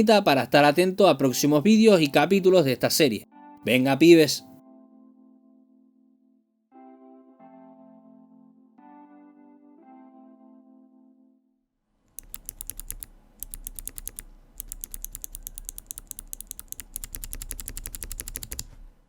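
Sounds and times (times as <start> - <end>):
mechanical keyboard typing: 12.1 - 19.0.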